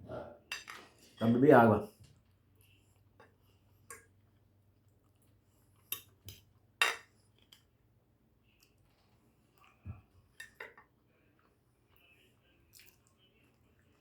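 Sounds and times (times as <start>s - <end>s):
cutlery clinking against plate: 0.5s - 1.2s, 5.8s - 7.6s, 10.4s - 10.9s.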